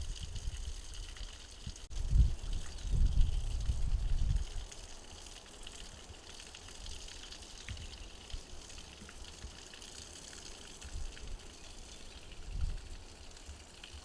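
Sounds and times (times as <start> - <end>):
faint running water hiss: 0.0 - 14.0.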